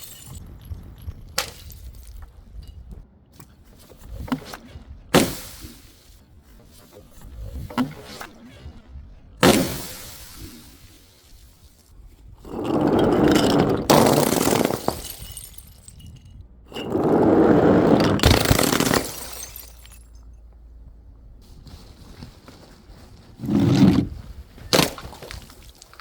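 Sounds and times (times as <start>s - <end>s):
sharp glass crack: 0.0s - 2.2s, 13.9s - 16.3s, 18.2s - 20.3s
glass crunching and shattering: 0.0s - 2.8s, 12.5s - 17.4s, 18.0s - 20.4s, 24.8s - 26.0s.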